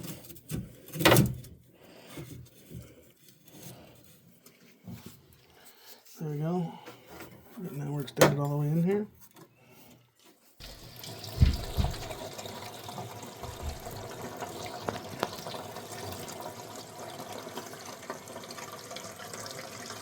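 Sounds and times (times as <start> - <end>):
small clicks and drips: 9.3 - 16.6
dull thumps: 10.6 - 12.2, 13.4 - 14.0
water splashing into floor drain: 10.6 - 20.0.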